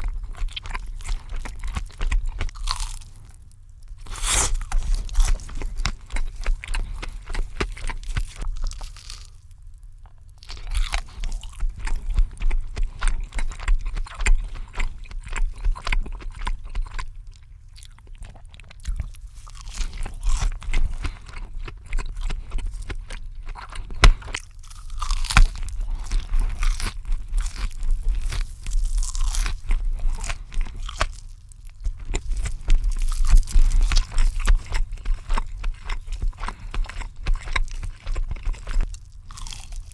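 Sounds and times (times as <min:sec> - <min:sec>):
person chewing crunchy food: 0:00.0 - 0:39.9.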